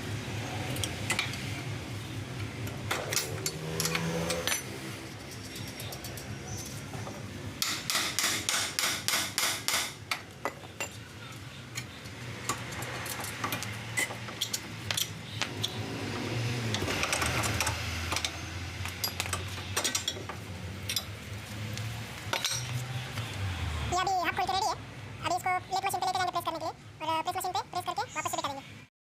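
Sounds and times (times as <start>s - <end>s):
steel tools clinking: 2.9s - 6.8s, 16.7s - 21.2s, 22.3s - 22.8s
hammer on metal: 7.6s - 10.0s.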